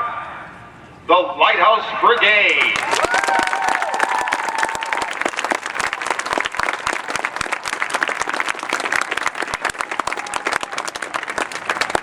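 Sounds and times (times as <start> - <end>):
crowd cheering: 2.1 - 12.0
crowd clapping: 2.2 - 12.0.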